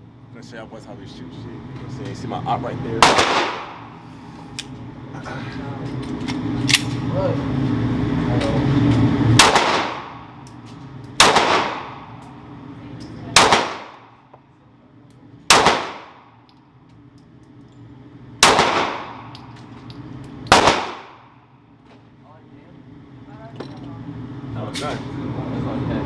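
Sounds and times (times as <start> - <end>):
gunshots echoing indoors: 3.0 - 3.9, 9.4 - 10.3, 11.2 - 12.0, 13.4 - 14.1, 15.5 - 16.3, 18.4 - 19.3, 20.5 - 21.3.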